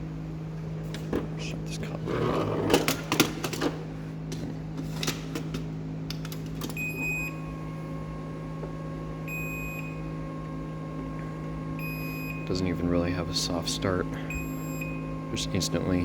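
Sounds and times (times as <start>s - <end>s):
garage door opener beeps: 6.6s - 7.8s, 9.2s - 10.8s, 11.7s - 16.0s
motor whine: 6.6s - 16.0s.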